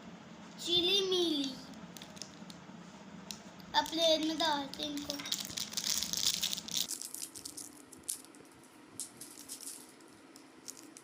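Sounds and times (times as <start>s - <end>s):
packet rustling: 1.9s - 2.6s, 3.8s - 11.0s
snacks rattling onto a plate: 5.0s - 8.3s.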